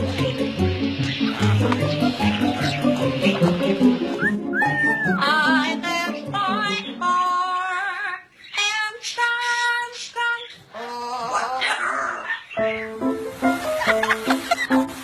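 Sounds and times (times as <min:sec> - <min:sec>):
high voice singing with vibrato: 0:00.0 - 0:11.8.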